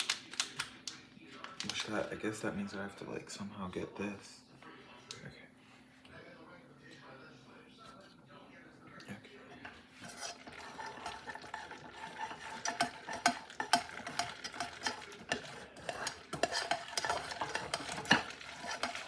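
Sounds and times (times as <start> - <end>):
spoon scraping and clinking in pot: 9.5 - 19.0.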